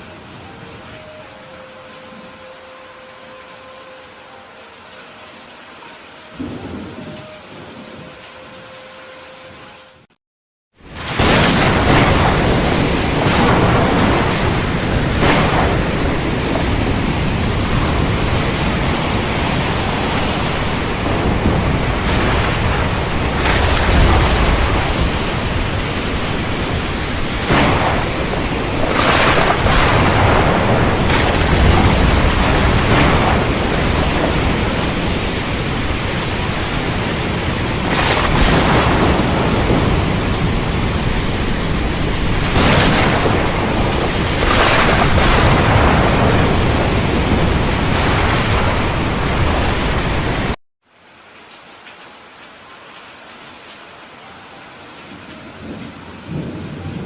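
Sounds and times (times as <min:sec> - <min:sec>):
heavy rain: 0:00.0 - 0:10.2, 0:10.8 - 0:57.0
thunder rumbling and cracking: 0:10.8 - 0:50.6, 0:55.5 - 0:57.0.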